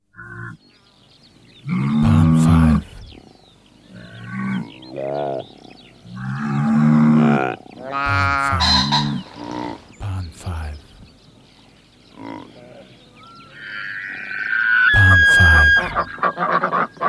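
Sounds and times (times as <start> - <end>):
animal bellowing: 0.2 - 0.6, 6.1 - 9.8, 13.2 - 17.0.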